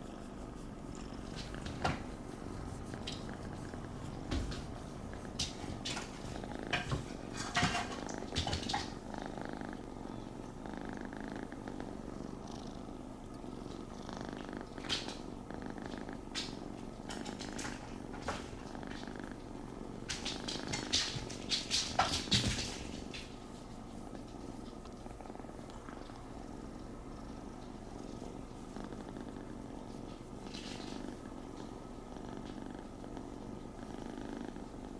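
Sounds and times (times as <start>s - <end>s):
kitten purring: 0.0s - 34.9s.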